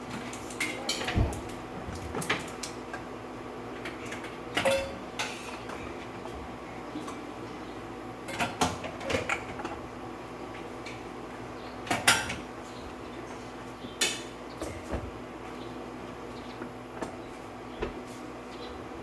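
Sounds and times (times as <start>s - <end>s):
steady low hum: 0.0s - 19.0s
cookware clanking: 4.2s - 5.4s.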